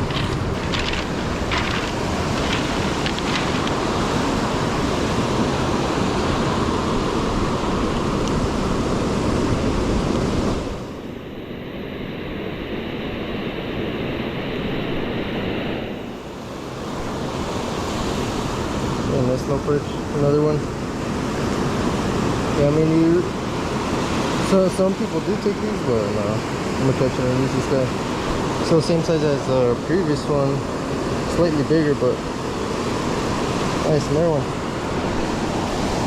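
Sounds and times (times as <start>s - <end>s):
wind buffeting microphone: 0.0s - 11.0s
ocean surf breaking: 0.0s - 11.7s, 14.0s - 36.0s.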